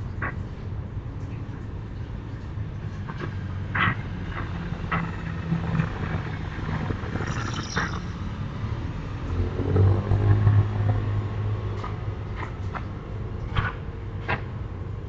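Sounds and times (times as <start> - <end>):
passing vehicle engine rumble: 3.0 - 14.8.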